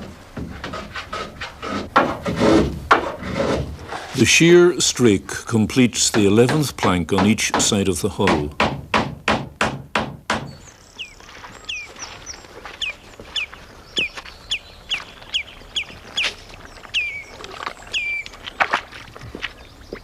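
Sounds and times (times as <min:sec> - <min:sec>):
bird chirping: 0:10.4 - 0:18.8.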